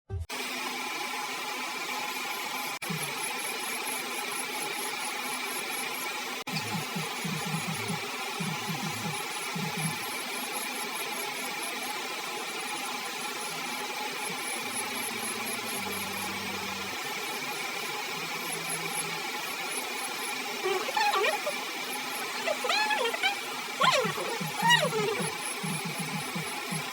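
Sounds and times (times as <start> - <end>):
electric nail drill grinding: 12.6 - 26.9.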